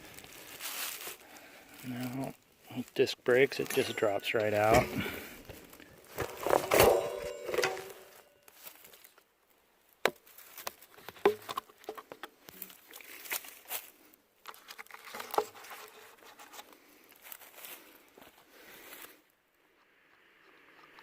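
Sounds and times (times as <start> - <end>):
soft rustling: 0.0 - 9.3
hands handling bike gear: 2.9 - 9.3, 10.0 - 19.2.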